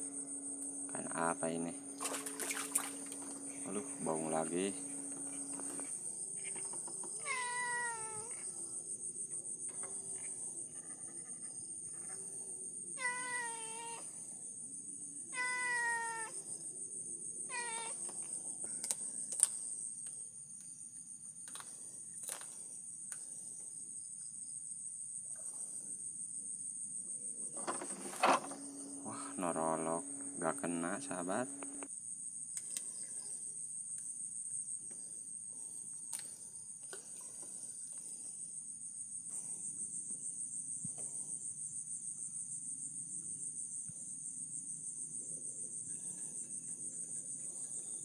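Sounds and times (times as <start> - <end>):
night insects trilling: 0.0 - 48.0
sharp clicks: 31.3 - 31.9.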